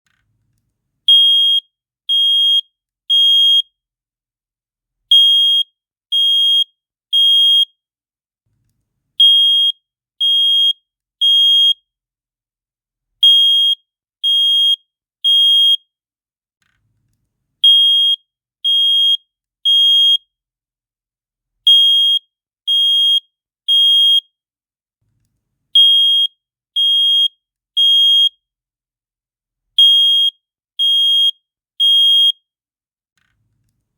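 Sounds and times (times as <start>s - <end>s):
fire alarm beeping: 1.1s - 3.7s, 5.1s - 7.7s, 9.2s - 11.8s, 13.2s - 15.8s, 17.6s - 20.2s, 21.7s - 24.3s, 25.8s - 28.3s, 29.8s - 32.4s.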